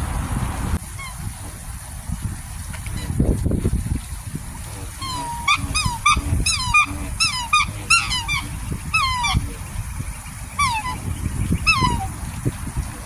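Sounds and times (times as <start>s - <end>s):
low rumbling background: 0.0s - 13.0s
swans honking calls: 4.6s - 12.3s.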